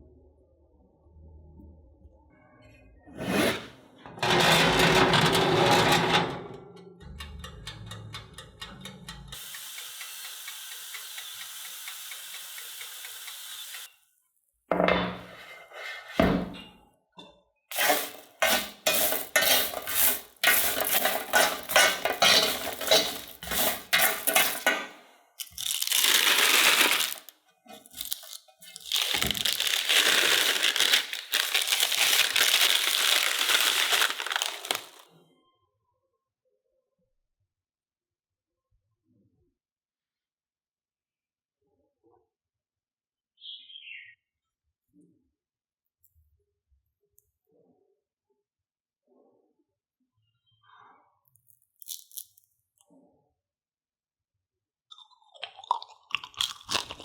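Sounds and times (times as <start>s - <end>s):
crisp snacks crunching: 17.7s - 24.7s, 25.4s - 35.0s, 51.8s - 52.4s, 55.0s - 57.0s
dishes clinking: 17.7s - 25.0s.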